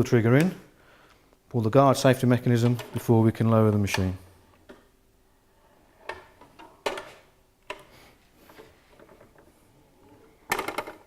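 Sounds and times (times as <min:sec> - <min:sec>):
metal and plastic parts clattering: 0:10.1 - 0:11.0.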